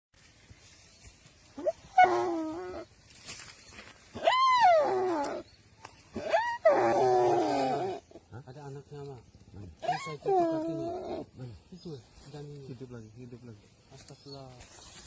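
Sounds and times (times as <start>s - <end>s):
animal crying in distress: 1.6s - 2.9s, 4.1s - 5.5s, 6.1s - 8.2s, 9.8s - 11.3s.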